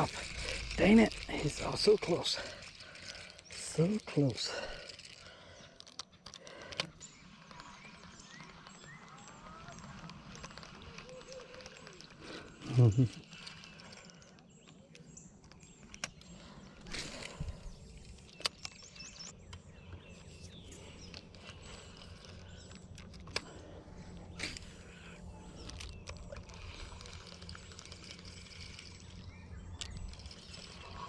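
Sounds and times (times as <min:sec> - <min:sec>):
steady low rumble: 0:00.0 - 0:03.8.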